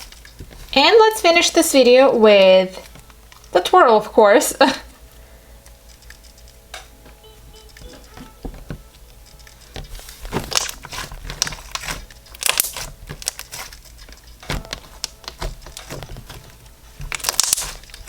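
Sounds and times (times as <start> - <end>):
slime crackling and popping: 9.3 - 18.0.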